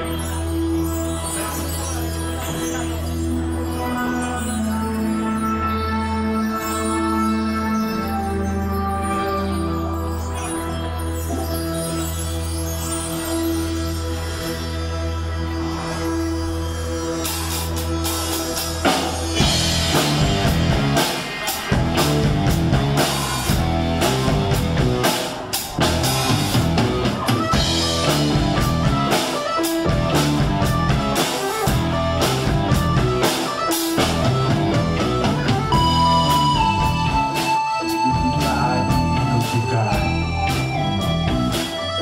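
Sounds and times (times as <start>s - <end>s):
rock music with drums and guitar: 16.8s - 42.0s.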